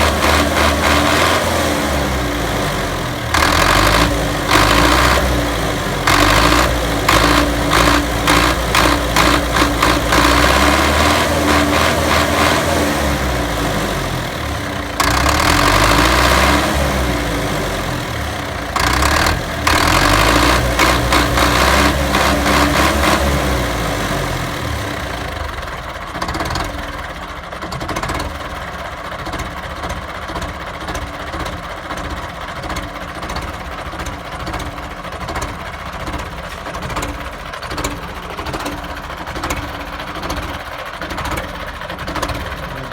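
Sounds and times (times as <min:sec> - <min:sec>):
tractor diesel engine revving and idling: 0:00.0 - 0:42.9.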